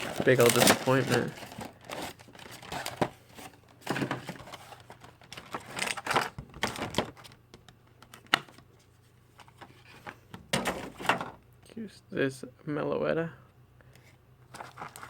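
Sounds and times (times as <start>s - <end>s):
packaging rustling: 0.0s - 8.7s, 14.5s - 15.0s.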